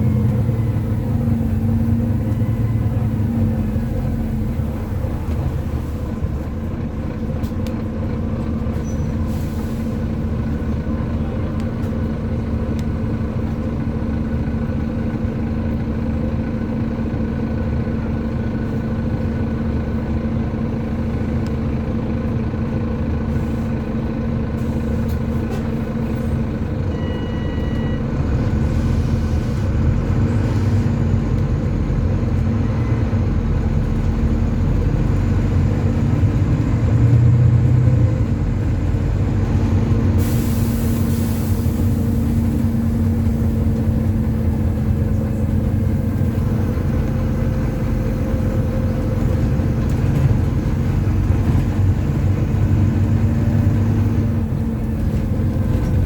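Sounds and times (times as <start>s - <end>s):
bus diesel engine droning: 0.0s - 56.0s
brief beep: 26.9s - 28.0s.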